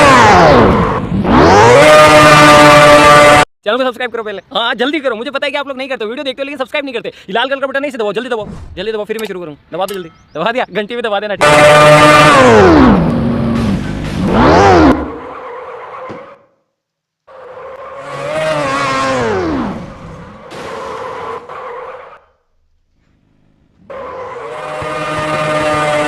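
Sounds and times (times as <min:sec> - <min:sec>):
motorcycle engine revving: 0:00.0 - 0:03.4, 0:11.4 - 0:15.3, 0:17.8 - 0:21.5, 0:23.8 - 0:26.0.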